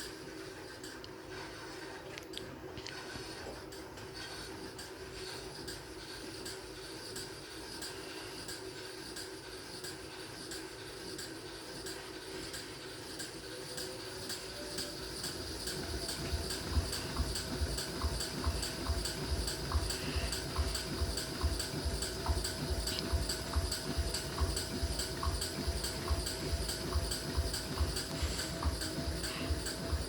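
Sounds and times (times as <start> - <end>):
washing machine humming: 0.0 - 30.0
rhythmic knocking: 3.2 - 30.0.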